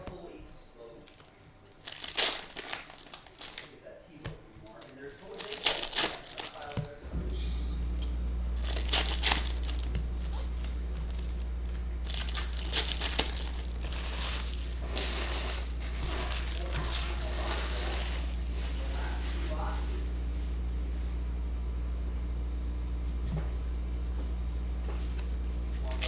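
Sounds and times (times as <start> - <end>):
foil wrappers crinkling and tearing: 0.2 - 20.2, 25.2 - 26.0
low hum: 5.5 - 26.0.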